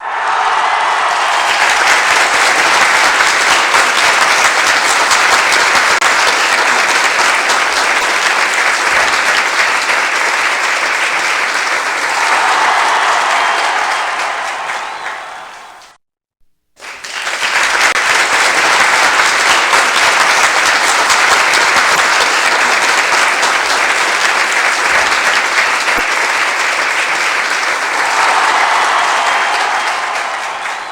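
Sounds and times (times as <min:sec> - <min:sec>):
crowd applauding and cheering: 0:00.0 - 0:16.0, 0:16.8 - 0:30.9.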